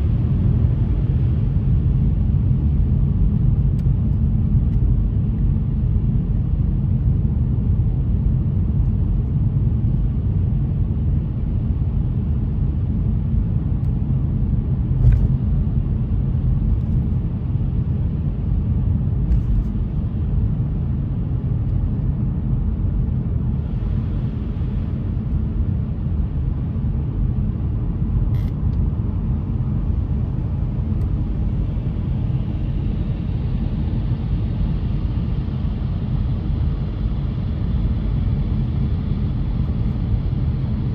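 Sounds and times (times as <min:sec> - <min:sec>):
car road and engine noise: 0:12.8 - 0:40.9.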